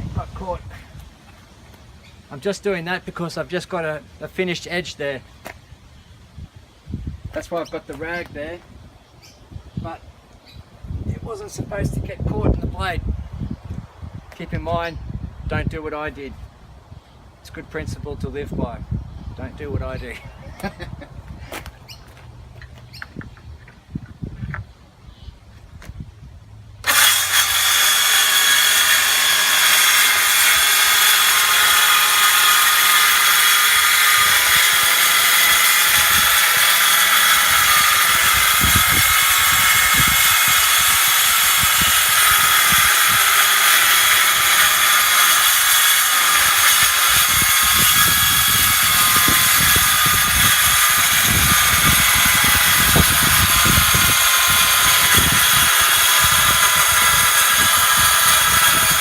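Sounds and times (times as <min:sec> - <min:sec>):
circular saw cutting wood: 0:26.8 - 0:59.0.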